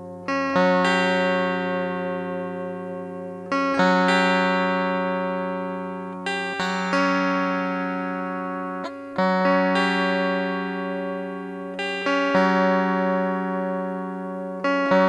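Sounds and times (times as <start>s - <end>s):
slow guitar chords strummed: 0.0s - 15.0s.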